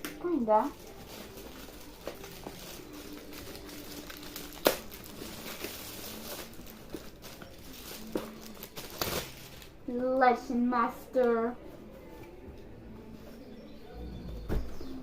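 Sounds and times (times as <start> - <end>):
packaging crinkling and rustling: 0.0 - 9.8.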